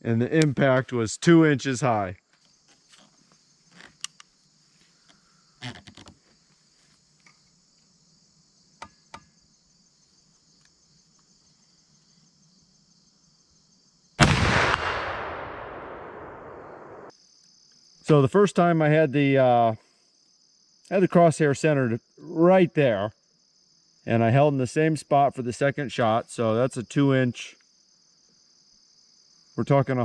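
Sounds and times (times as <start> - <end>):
crickets chirping: 0.0 - 30.0
gunshot echoing: 14.2 - 17.1.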